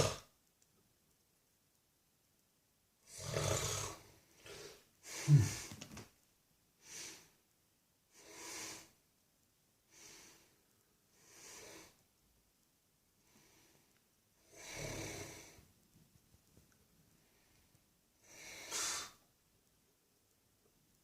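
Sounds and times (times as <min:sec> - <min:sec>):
man snoring: 0:00.0 - 0:00.3, 0:03.1 - 0:04.6, 0:14.5 - 0:15.6
sharp snort: 0:00.0 - 0:00.3, 0:03.1 - 0:05.7, 0:18.4 - 0:19.2
soft breaths: 0:03.8 - 0:06.0, 0:06.8 - 0:07.4, 0:08.1 - 0:09.0, 0:09.8 - 0:12.2, 0:13.1 - 0:15.8, 0:16.4 - 0:19.3.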